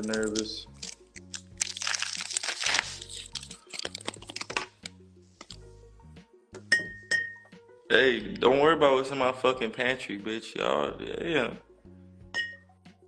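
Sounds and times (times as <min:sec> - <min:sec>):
close crackling and clicking: 0:00.0 - 0:05.6
background music with bass line: 0:00.0 - 0:13.0.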